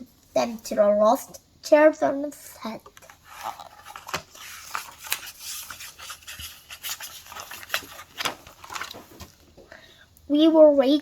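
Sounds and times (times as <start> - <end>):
book pages rustling and turning: 2.8 - 9.6
paper scrapes and ticks: 3.0 - 9.0.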